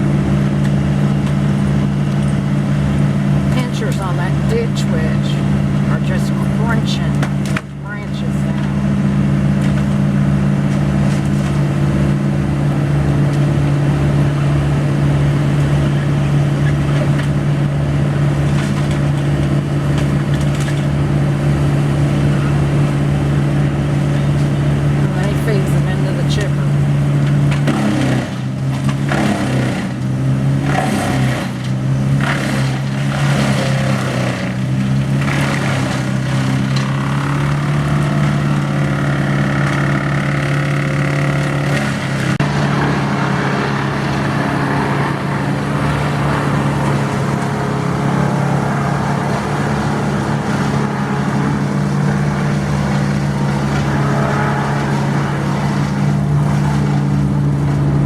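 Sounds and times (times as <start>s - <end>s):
large engine running: 0.0s - 58.0s
wood cracking and crunching: 9.6s - 12.3s, 27.2s - 42.5s.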